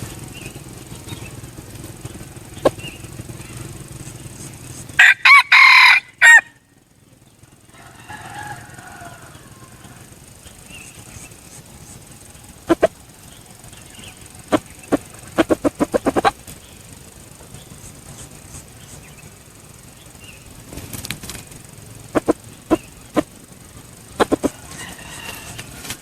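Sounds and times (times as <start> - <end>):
faint bird chirps: 0.0 - 5.0, 8.9 - 26.0
bird wings flapping: 13.6 - 19.2, 20.5 - 23.4, 24.1 - 26.0.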